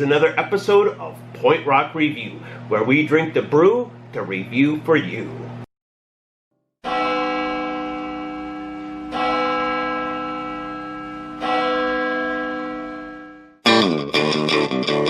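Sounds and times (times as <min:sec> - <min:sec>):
large bell ringing: 0:06.8 - 0:13.8.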